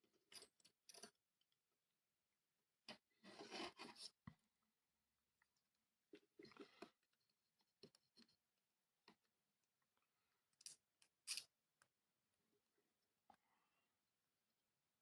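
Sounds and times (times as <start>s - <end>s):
faint clicks of small parts: 0.2s - 1.2s, 6.2s - 8.4s, 9.0s - 12.0s.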